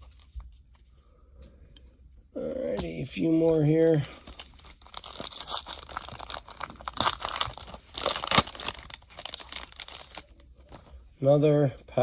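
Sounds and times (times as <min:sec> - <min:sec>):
foil wrapper tearing and crinkling: 0:04.2 - 0:10.8.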